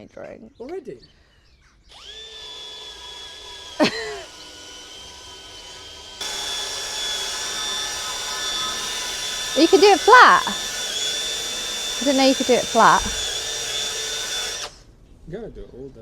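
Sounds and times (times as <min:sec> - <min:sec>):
power tool whining: 0:01.9 - 0:14.8.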